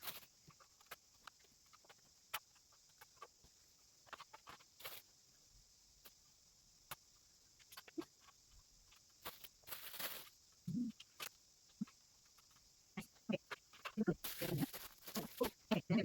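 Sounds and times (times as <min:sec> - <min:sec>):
rustling: 0:07.6 - 0:16.0.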